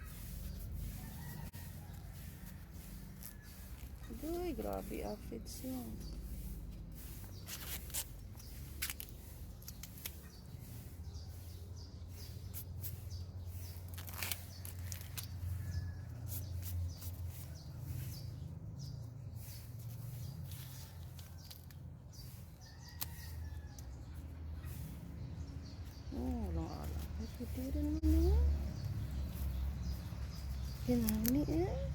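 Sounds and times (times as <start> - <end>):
corn leaves rustling: 0.0 - 10.9, 12.8 - 15.8, 19.4 - 23.2, 26.1 - 31.9.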